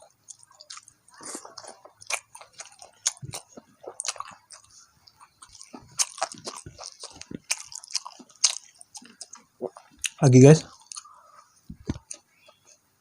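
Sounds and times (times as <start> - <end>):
crisp chewing crunches: 0.2 - 12.6.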